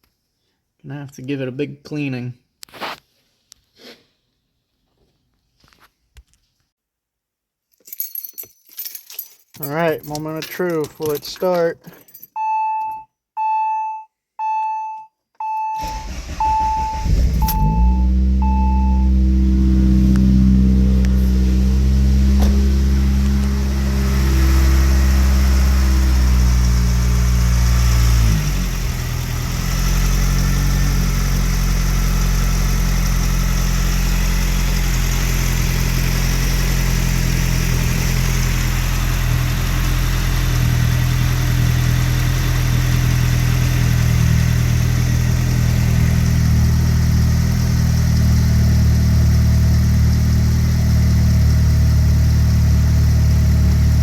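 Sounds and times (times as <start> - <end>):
car engine idling: 15.8 - 54.0.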